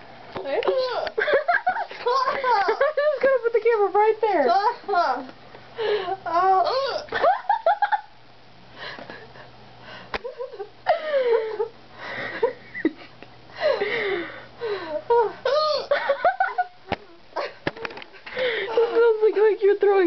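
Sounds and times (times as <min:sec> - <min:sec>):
wheezing laughter: 0:00.8 - 0:03.2, 0:10.1 - 0:17.7.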